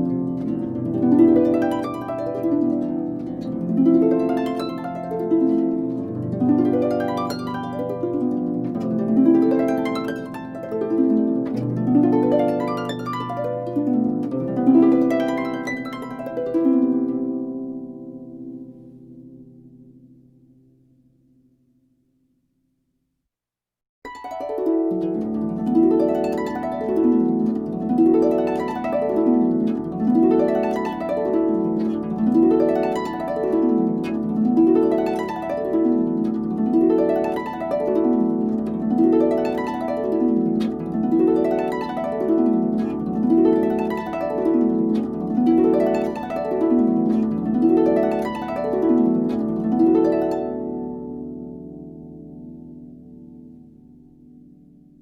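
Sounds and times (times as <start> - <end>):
harp playing arpeggios: 0.0 - 21.1, 24.0 - 55.0.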